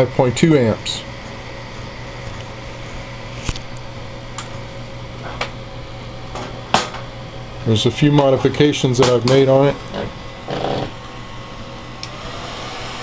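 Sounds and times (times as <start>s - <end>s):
cooling fan whirring: 0.0s - 13.0s.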